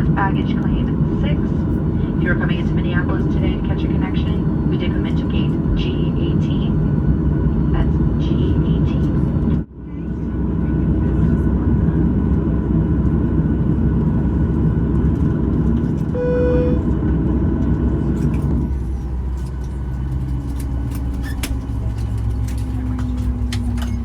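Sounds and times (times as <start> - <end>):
aircraft engine rumble: 0.0 - 24.0
low hum with falling tone: 16.0 - 22.9.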